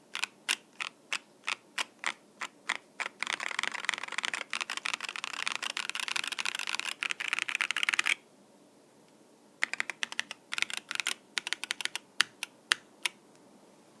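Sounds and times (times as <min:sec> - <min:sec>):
mechanical keyboard typing: 0:00.1 - 0:08.2, 0:09.6 - 0:13.2.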